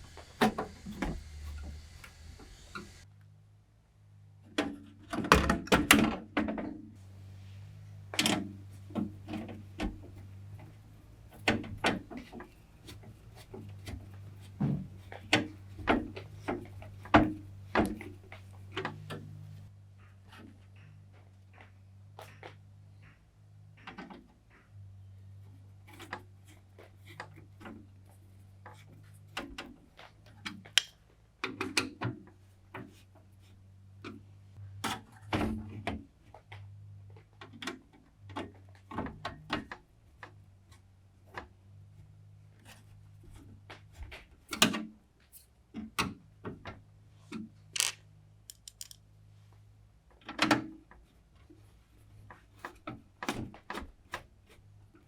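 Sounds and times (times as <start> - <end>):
plastic and metal clicks and knocks: 47.8 - 49.0.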